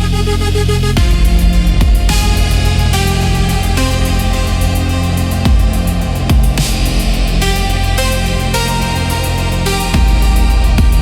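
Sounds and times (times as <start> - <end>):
pulsing bass line: 0.0 - 11.0.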